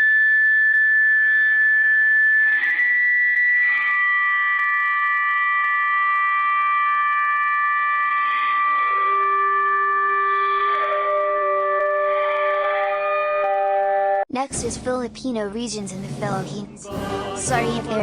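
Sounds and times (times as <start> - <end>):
electronic alarm tones: 0.0 - 14.2.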